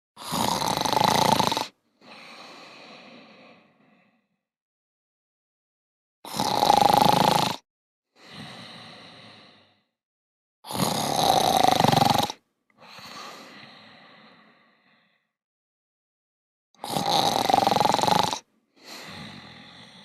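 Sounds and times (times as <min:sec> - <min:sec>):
rasping snore: 0:00.2 - 0:02.4, 0:06.3 - 0:07.6, 0:10.7 - 0:12.4, 0:16.8 - 0:20.0
soft breath out: 0:02.0 - 0:04.4, 0:08.2 - 0:10.0, 0:12.8 - 0:15.3, 0:18.8 - 0:20.0.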